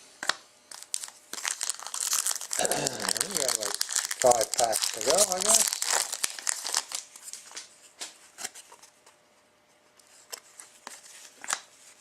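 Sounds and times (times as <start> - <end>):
trading cards clicking and rustling: 0.2 - 8.9.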